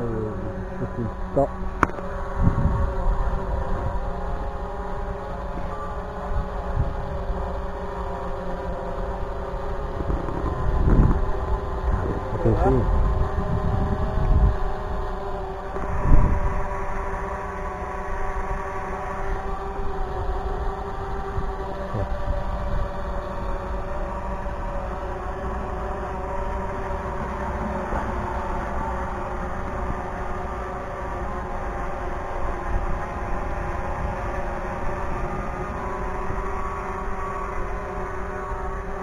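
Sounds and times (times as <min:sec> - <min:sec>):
wind rumbling on microphone: 0:00.0 - 0:07.7, 0:09.5 - 0:17.0, 0:19.8 - 0:24.8
drone propellers humming: 0:00.0 - 0:39.0.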